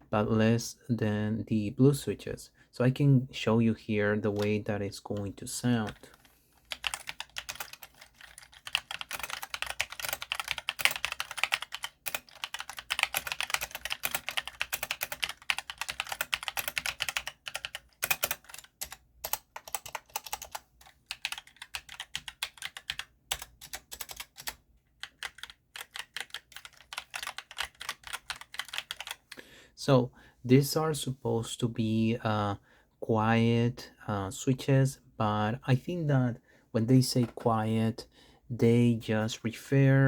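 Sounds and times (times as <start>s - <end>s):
mechanical keyboard typing: 4.3s - 29.4s.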